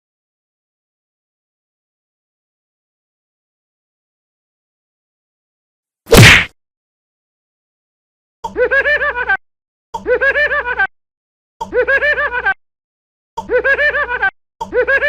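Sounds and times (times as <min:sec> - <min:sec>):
canned laugh sound effect: 0:13.4 - 0:15.0.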